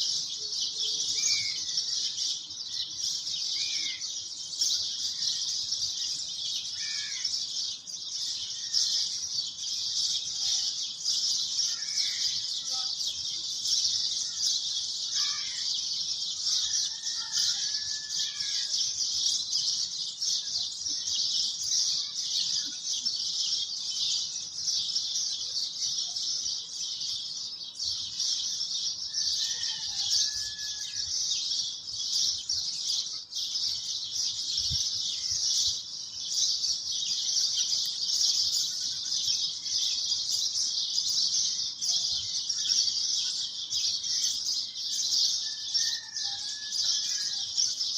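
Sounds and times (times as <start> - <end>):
faint bird chirps: 0.0 - 31.9.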